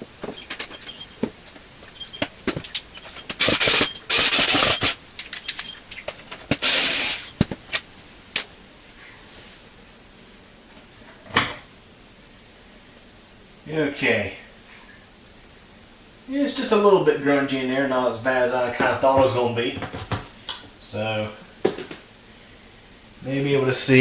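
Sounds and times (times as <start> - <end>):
plastic parts clicking and rattling: 0.2 - 8.5
loud hissing bursts: 2.8 - 5.8, 6.5 - 7.4.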